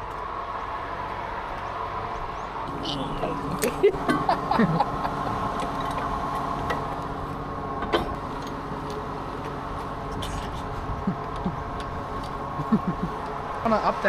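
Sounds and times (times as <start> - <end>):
steady whine: 0.0 - 14.0
vehicle engine running: 0.0 - 14.0.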